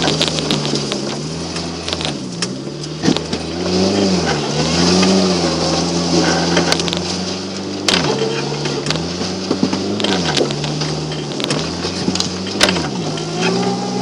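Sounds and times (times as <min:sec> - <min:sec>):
car engine revving under load: 0:00.0 - 0:14.0
sharp knocks: 0:07.9 - 0:08.2.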